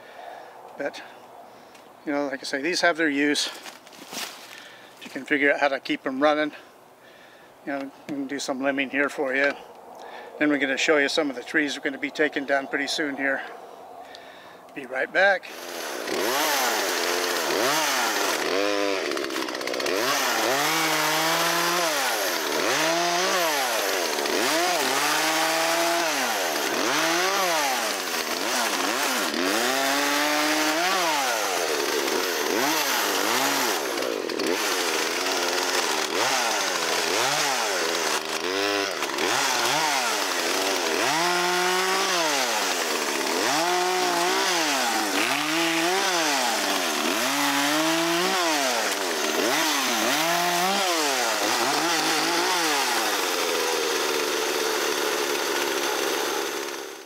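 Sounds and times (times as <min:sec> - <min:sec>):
chainsaw revving: 0:15.4 - 0:57.0.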